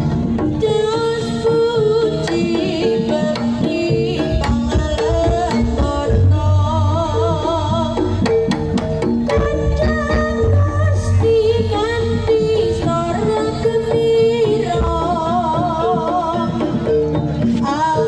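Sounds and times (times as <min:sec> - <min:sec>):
wavering melody line: 0:02.4 - 0:18.0.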